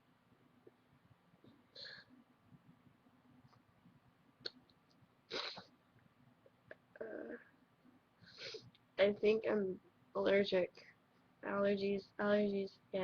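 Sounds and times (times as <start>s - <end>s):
woman sniffing: 8.3s - 8.7s.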